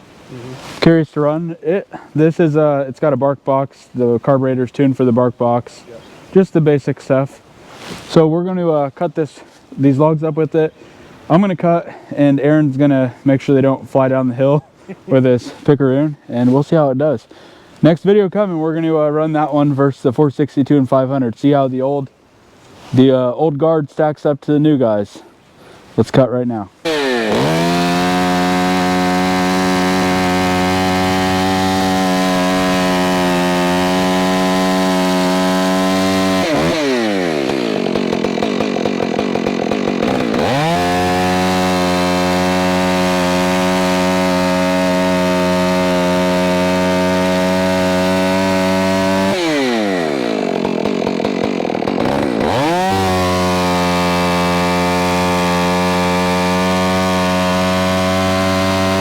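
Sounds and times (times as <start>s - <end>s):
chainsaw cutting logs: 26.8s - 59.0s.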